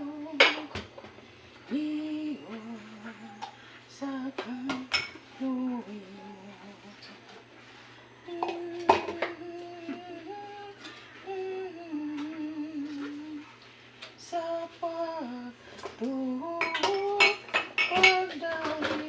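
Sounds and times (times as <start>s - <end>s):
woman singing a hymn unaccompanied: 0.0s - 1.0s, 1.6s - 7.4s, 8.2s - 13.6s, 14.2s - 19.0s
dishes and cutlery clinking: 0.4s - 0.8s, 4.4s - 5.3s, 8.4s - 9.4s, 16.6s - 19.0s.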